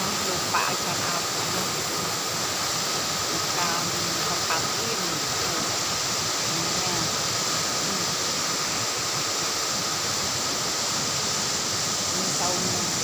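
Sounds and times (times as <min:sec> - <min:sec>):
river rushing: 0:00.0 - 0:13.0
faint voices: 0:03.3 - 0:05.8, 0:12.1 - 0:13.0.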